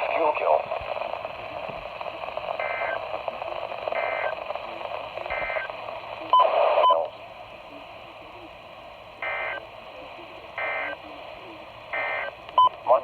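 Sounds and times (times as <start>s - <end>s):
radio hiss: 0.0s - 13.0s
two-tone data bursts: 2.6s - 3.1s, 3.9s - 4.4s, 5.3s - 7.0s, 9.2s - 9.7s, 10.6s - 11.0s, 11.9s - 12.8s.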